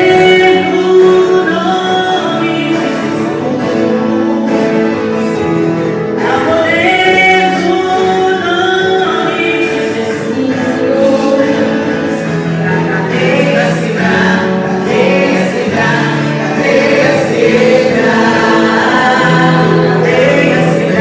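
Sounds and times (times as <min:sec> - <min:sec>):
instrumental backing: 0:00.0 - 0:21.0
choir singing: 0:09.8 - 0:21.0.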